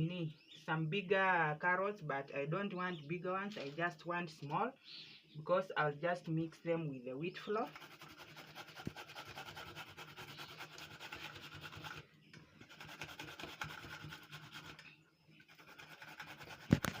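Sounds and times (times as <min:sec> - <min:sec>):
carrot scraping on grater: 0:07.7 - 0:12.0, 0:12.6 - 0:14.8, 0:15.4 - 0:17.0.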